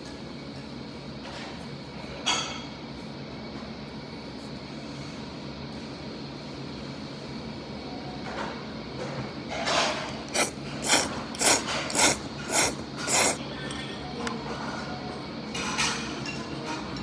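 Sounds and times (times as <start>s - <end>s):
low restaurant hum: 0.0s - 17.0s
noodles being slurped: 10.1s - 13.4s.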